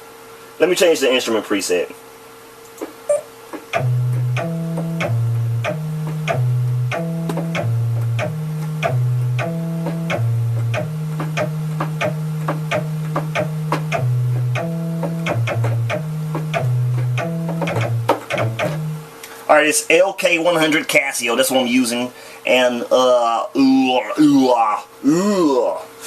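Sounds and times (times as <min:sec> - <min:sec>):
plucked synth bass line: 0:03.1 - 0:19.1
sharp ticks: 0:03.6 - 0:18.8.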